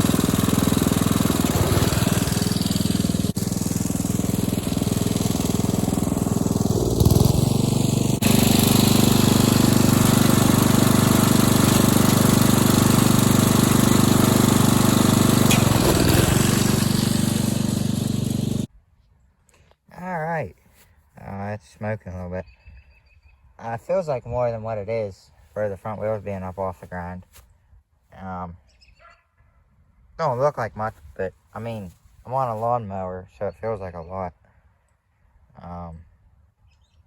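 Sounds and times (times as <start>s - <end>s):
riding lawnmower engine running: 0.0s - 18.7s.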